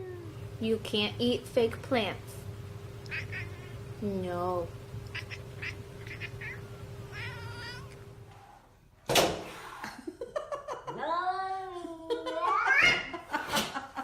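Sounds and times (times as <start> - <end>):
cat meowing: 3.1 - 3.8, 5.1 - 8.0
cat yowling: 3.1 - 3.8, 5.1 - 8.0.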